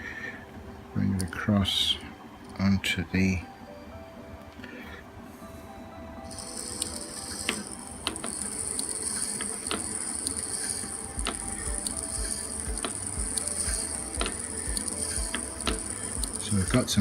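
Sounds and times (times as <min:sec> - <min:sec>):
gear clicks: 0:06.3 - 0:17.0
metal lathe whining: 0:06.3 - 0:17.0.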